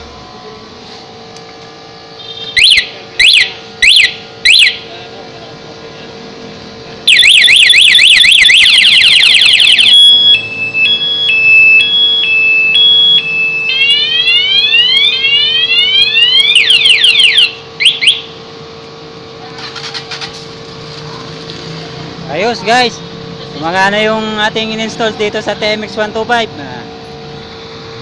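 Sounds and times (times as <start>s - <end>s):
motorcycle alarm siren: 2.2s - 4.9s, 7.0s - 18.7s.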